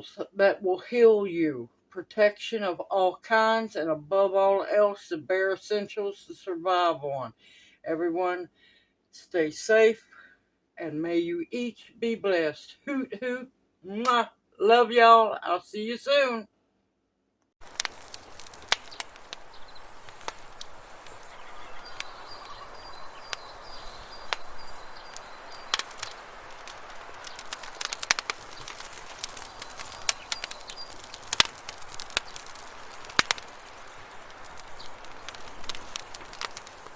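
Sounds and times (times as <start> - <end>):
faint high bird calls: 18.3 - 36.9
sharp taps and clicks: 25.1 - 36.9.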